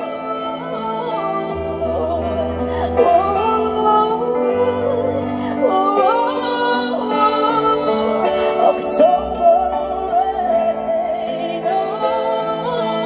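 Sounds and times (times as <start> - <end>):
pop ballad backing music: 0.0 - 13.0.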